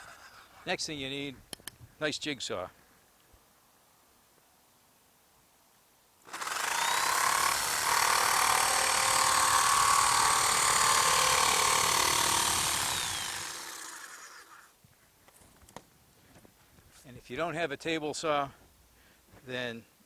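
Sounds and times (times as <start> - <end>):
electric jigsaw running: 6.3 - 14.7.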